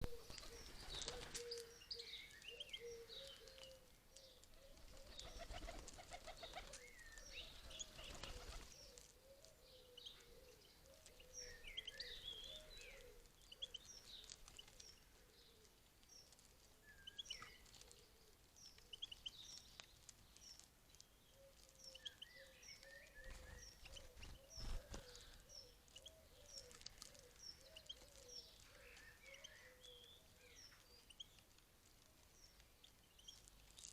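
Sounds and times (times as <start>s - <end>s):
rustling noise: 31.4s - 33.9s.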